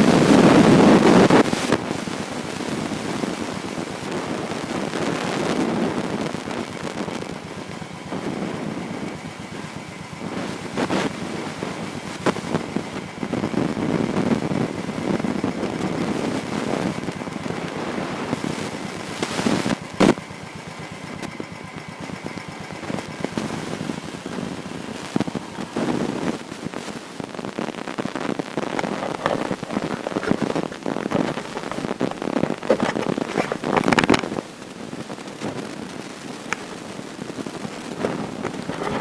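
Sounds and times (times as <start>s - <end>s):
wind buffeting microphone: 0.0s - 20.2s, 21.2s - 39.0s
motorcycle engine running: 0.1s - 39.0s.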